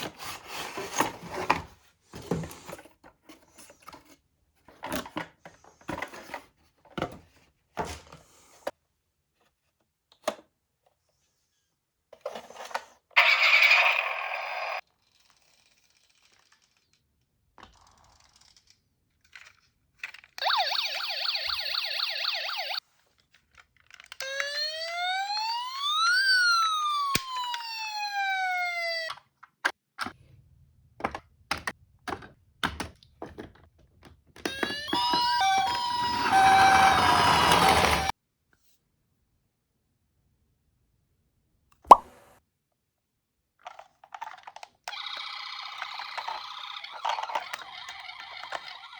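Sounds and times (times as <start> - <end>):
toy siren warbling and wailing: 13.2 - 14.8, 20.4 - 22.8, 24.2 - 29.2, 34.5 - 38.1, 44.9 - 48.9
toy cars clicking and knocking: 14.9 - 20.4, 23.2 - 24.6, 31.0 - 38.1, 43.6 - 48.9.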